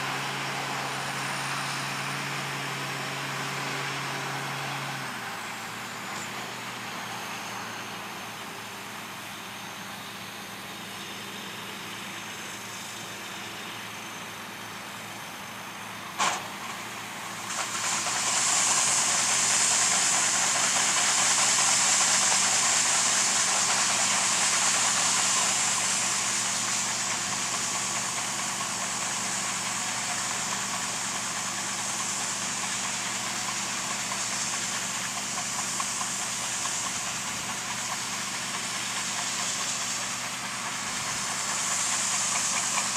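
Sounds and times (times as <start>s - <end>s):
diesel engine running: 0.0s - 42.9s
loud hissing rush: 14.3s - 42.9s.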